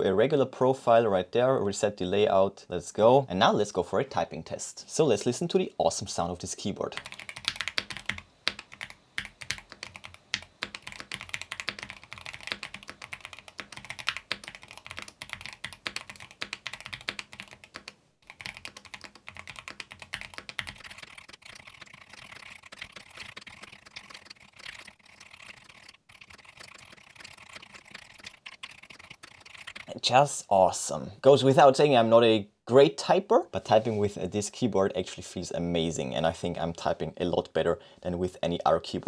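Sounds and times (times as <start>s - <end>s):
fast typing on keyboard: 7.0s - 30.0s.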